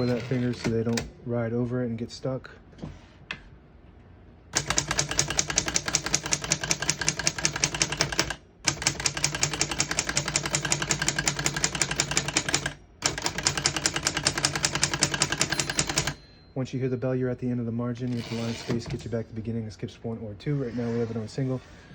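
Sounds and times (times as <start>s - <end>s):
typewriter keys typing: 4.6s - 16.2s.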